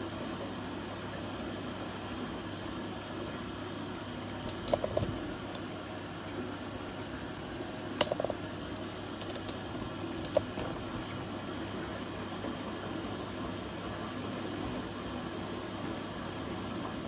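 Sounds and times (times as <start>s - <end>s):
clicks: 8.0s - 8.4s
washing machine drum turning: 9.2s - 11.3s.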